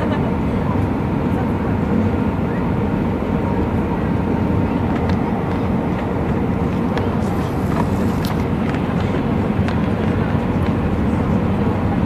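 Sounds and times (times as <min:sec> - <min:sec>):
airliner cabin rumble: 0:00.0 - 0:12.0.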